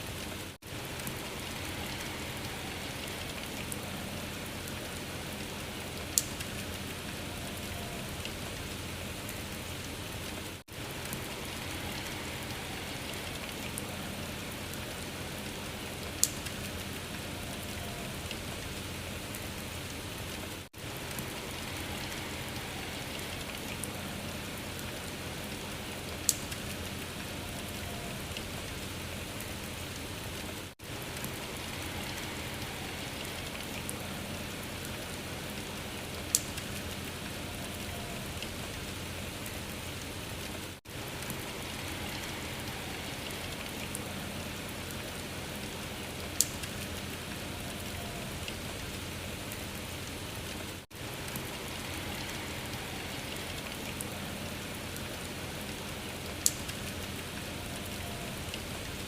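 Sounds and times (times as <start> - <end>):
rain-like patter and hiss: 0.0 - 59.0
sharp tick: 6.2 - 6.5, 26.3 - 26.5, 46.4 - 46.6.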